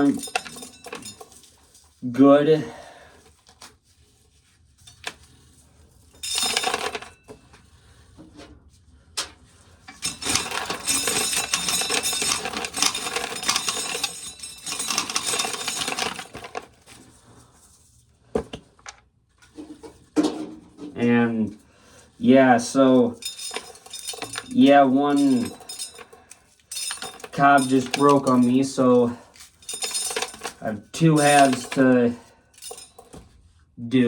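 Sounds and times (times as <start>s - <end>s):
corn kernels rattling into container: 10.0s - 16.8s, 23.0s - 32.0s.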